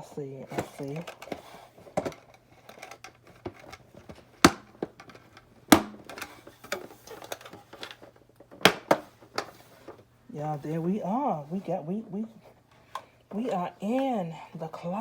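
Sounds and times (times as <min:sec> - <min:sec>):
plastic parts clicking and tapping: 0:00.5 - 0:10.0
loud sharp plastic snaps: 0:05.7 - 0:06.3, 0:07.4 - 0:09.5.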